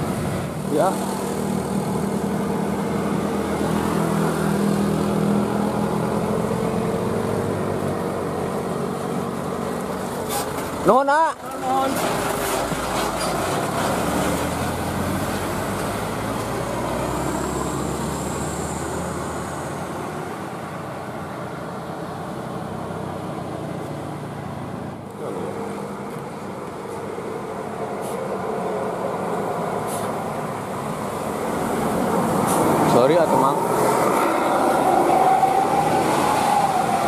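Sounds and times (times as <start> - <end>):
bus engine humming: 0.0 - 37.0
road and traffic noise: 0.0 - 37.0.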